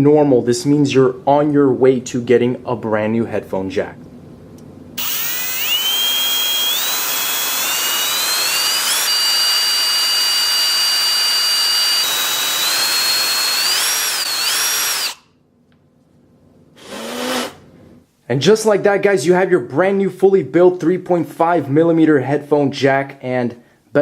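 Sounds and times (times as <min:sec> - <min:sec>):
electric drill whining: 0:05.0 - 0:15.2, 0:16.8 - 0:17.6.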